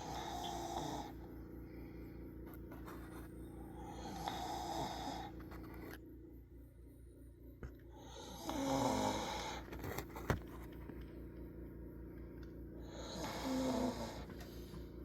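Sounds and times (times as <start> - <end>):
person snoring: 0.0 - 1.3, 3.7 - 5.4, 7.9 - 9.7, 12.8 - 14.6.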